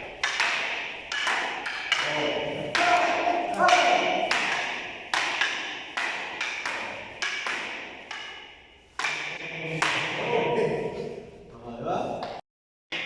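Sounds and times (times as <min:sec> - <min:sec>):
wooden sticks clacking together: 0:00.0 - 0:10.2.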